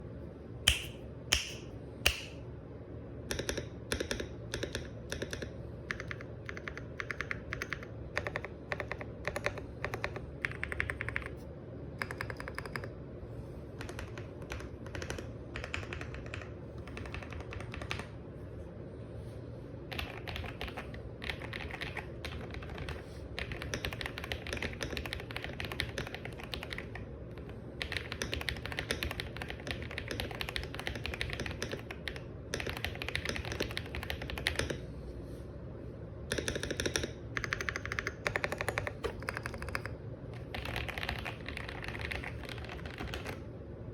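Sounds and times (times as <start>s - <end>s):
typing on mechanical keyboard: 3.3s - 11.4s, 12.0s - 13.0s, 13.8s - 18.1s, 19.9s - 34.8s, 36.3s - 43.4s.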